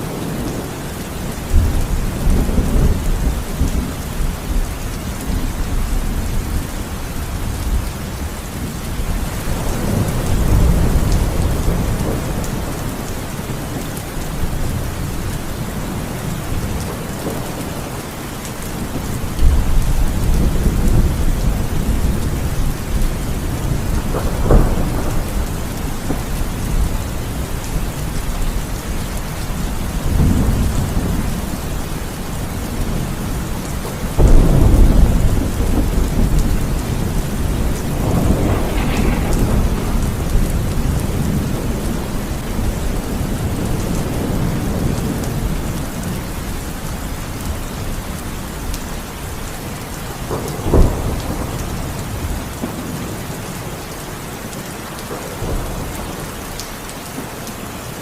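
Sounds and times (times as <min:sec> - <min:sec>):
low thunder rumbling: 0:00.0 - 0:53.8
heavy rain pouring: 0:00.0 - 0:58.0
sharp thunder crack: 0:23.4 - 0:27.4, 0:34.2 - 0:44.9.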